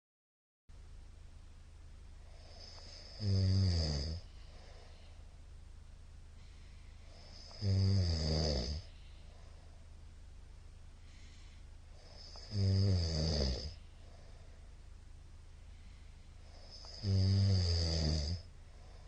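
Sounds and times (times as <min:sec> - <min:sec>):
man snoring heavily: 0:02.3 - 0:04.8, 0:07.1 - 0:09.0, 0:12.0 - 0:13.8, 0:16.4 - 0:18.5.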